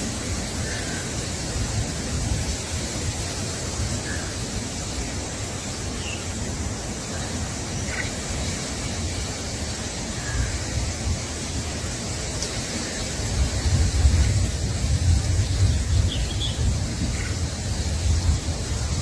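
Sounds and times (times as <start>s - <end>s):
steady rushing noise: 0.0s - 19.0s
small birds chirping: 4.0s - 9.3s, 15.2s - 17.5s.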